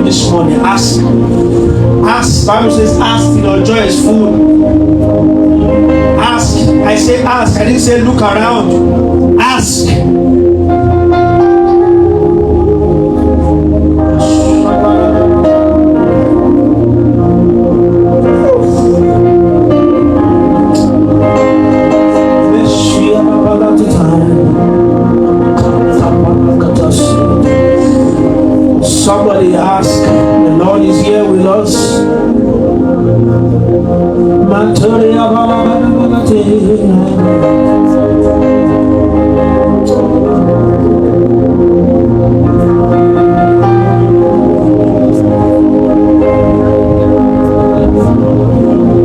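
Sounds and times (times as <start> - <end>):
slow instrumental worship music: 0.0 - 49.0
person singing: 11.4 - 16.6, 20.2 - 33.1, 34.4 - 40.7.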